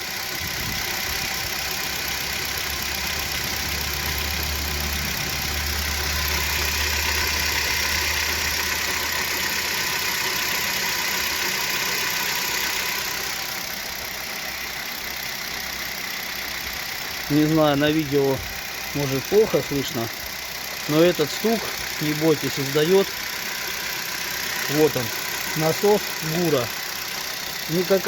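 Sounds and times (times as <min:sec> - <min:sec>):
car engine idling: 0:00.0 - 0:28.0.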